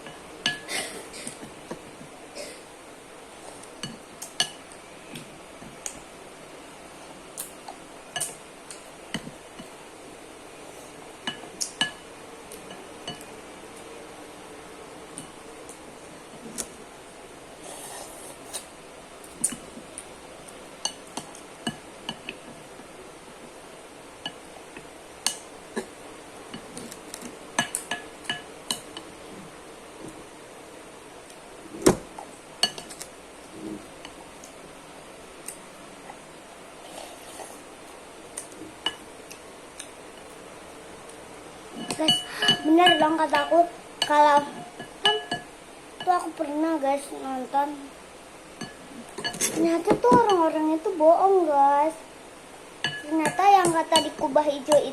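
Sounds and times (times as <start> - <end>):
cutlery clinking against bowl: 41.8 - 43.6, 44.4 - 45.5, 48.6 - 50.4, 52.8 - 54.2.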